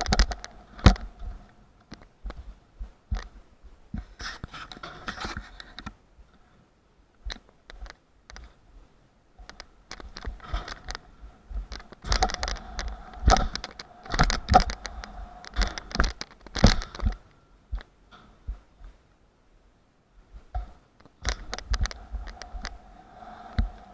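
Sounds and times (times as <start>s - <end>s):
skateboard wheels rolling on concrete: 9.4s - 17.9s, 20.4s - 23.9s.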